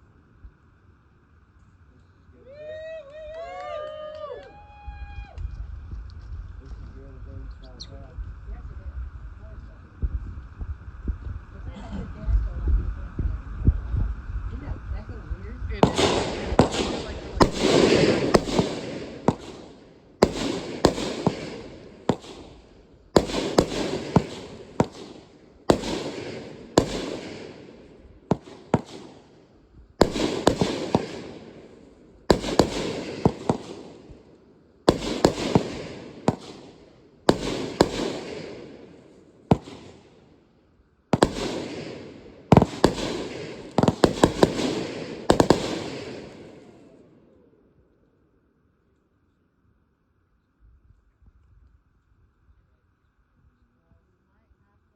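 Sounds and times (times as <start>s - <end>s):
fireworks bangs with crackle: 3.4s - 40.4s, 41.1s - 47.0s.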